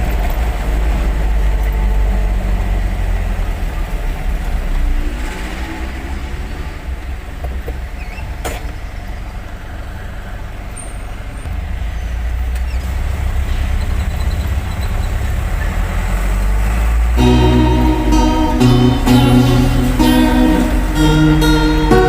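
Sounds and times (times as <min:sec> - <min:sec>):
truck engine rumbling: 0:08.6 - 0:22.0.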